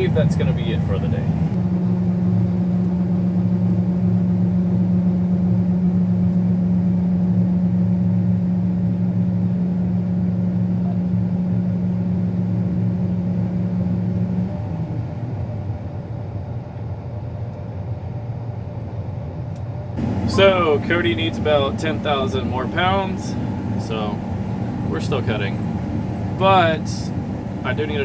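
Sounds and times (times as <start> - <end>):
combine harvester droning: 0.0 - 1.6, 20.0 - 28.0.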